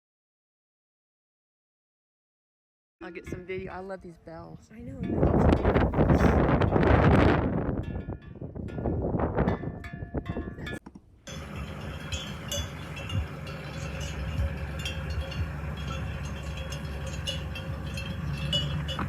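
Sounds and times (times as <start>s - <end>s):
steady low rumble: 4.6s - 7.0s, 10.6s - 19.0s
wind on microphone: 4.6s - 10.8s, 11.7s - 19.0s
livestock bells clinking: 4.8s - 7.2s, 7.8s - 19.0s.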